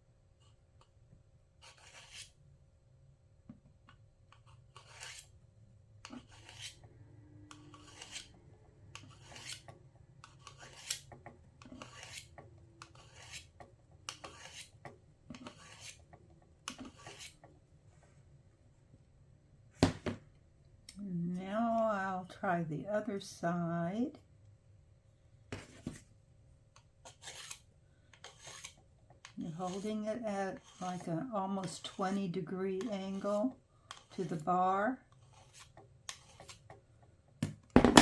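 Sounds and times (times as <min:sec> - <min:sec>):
scissor blade scraping on ceramic: 0:01.6 - 0:02.4, 0:04.3 - 0:05.3, 0:06.0 - 0:17.5, 0:26.8 - 0:36.8.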